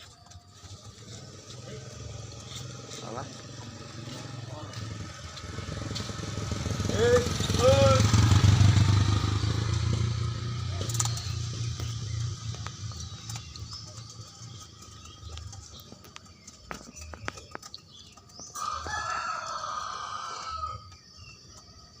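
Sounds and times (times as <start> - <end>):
motorcycle engine humming: 0.0 - 20.0
rooster crowing: 18.5 - 20.9.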